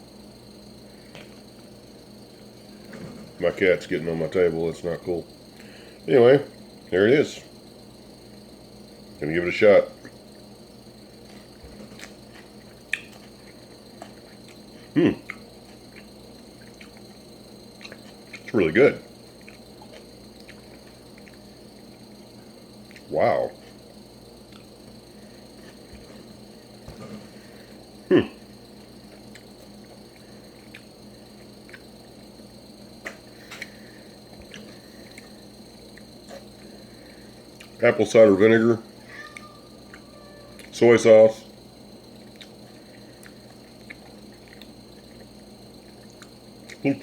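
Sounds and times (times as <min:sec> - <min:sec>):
chewing: 0:11.2 - 0:18.5, 0:19.2 - 0:23.1, 0:28.8 - 0:32.2, 0:33.0 - 0:36.6, 0:37.5 - 0:37.8, 0:42.2 - 0:46.9
wet mouth chewing clicks: 0:12.9 - 0:13.3, 0:15.2 - 0:18.5, 0:19.3 - 0:21.4, 0:30.6 - 0:31.0, 0:31.6 - 0:31.9, 0:42.3 - 0:42.6, 0:43.2 - 0:46.8.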